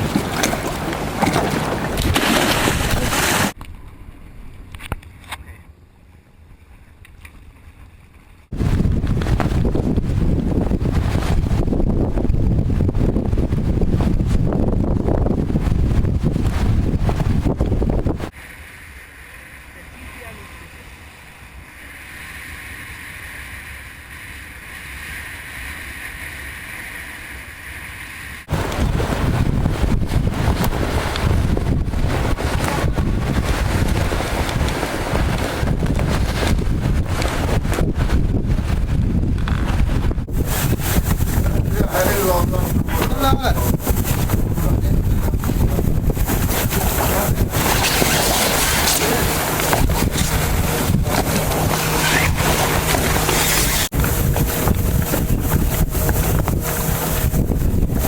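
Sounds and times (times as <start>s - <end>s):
surf: 0.0s - 3.8s, 6.6s - 58.0s
wind: 0.0s - 58.0s
wind buffeting microphone: 8.4s - 18.4s, 28.4s - 58.0s.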